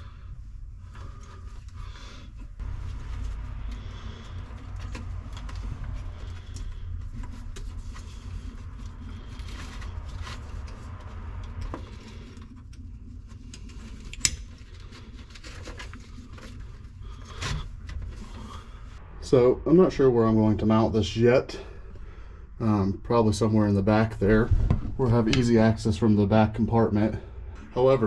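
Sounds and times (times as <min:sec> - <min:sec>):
low rumble: 0:00.0 - 0:28.0
rustling handling noise: 0:00.7 - 0:19.0.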